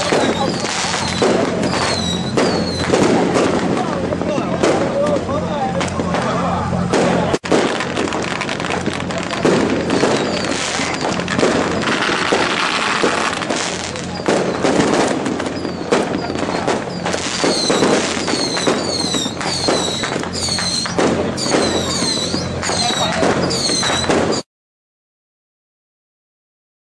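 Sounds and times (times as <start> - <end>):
high whistles falling in pitch: 0.0 - 2.9, 15.5 - 24.4
firecrackers crackling: 0.0 - 24.5.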